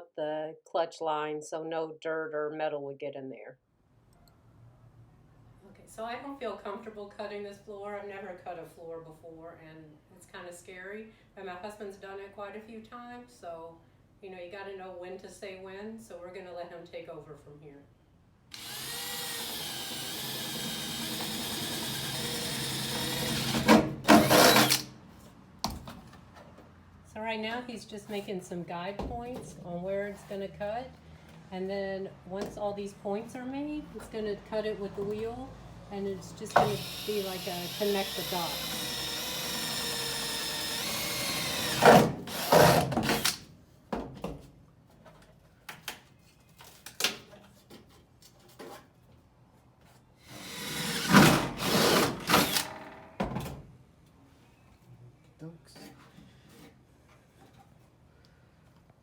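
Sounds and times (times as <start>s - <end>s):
power drill drilling metal: 18.6s - 24.9s, 36.5s - 43.4s, 50.3s - 52.9s.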